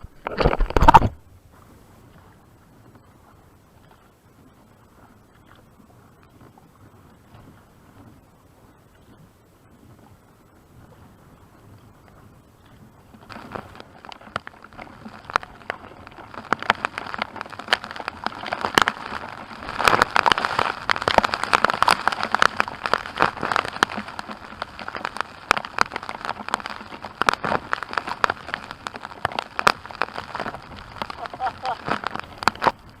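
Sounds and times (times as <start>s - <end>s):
heavy rain pelting down: 15.2s - 33.0s.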